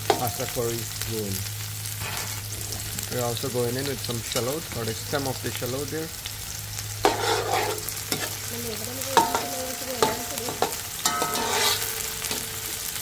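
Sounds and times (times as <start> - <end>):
vegetables sizzling in a pot: 0.0 - 13.0
utensil clinking against pot: 9.2 - 12.6.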